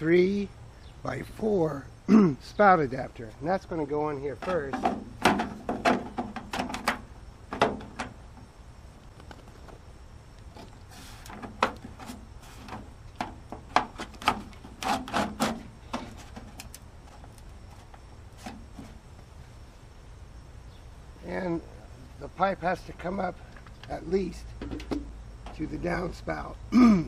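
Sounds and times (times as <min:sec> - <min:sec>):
plastic pipe knocks and clicks: 0:04.4 - 0:08.1, 0:24.6 - 0:25.1
plastic pipe scraping: 0:10.5 - 0:19.0.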